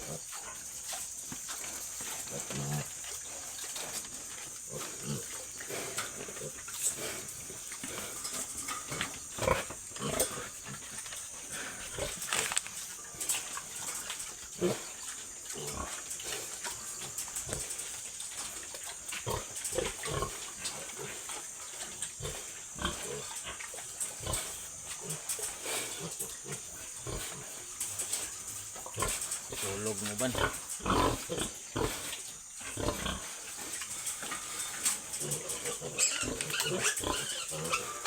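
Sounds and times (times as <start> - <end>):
pigs grunting and squealing: 0.0 - 0.9, 1.8 - 38.0
steady high hiss: 0.0 - 38.0.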